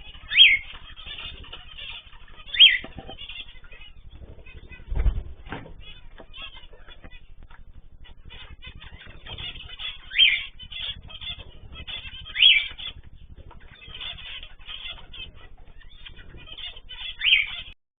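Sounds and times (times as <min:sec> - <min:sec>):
upward-sweeping bird call: 0:00.0 - 0:07.4, 0:08.0 - 0:17.8
small cage birds chirping: 0:00.0 - 0:17.8.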